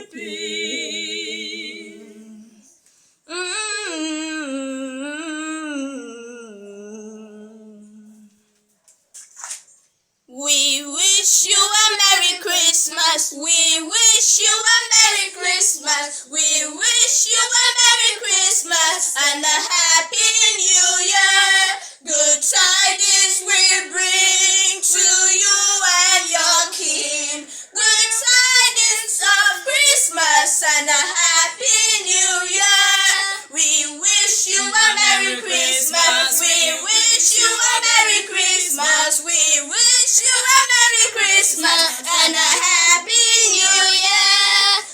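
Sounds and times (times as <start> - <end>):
high voice singing: 23.9 - 44.9.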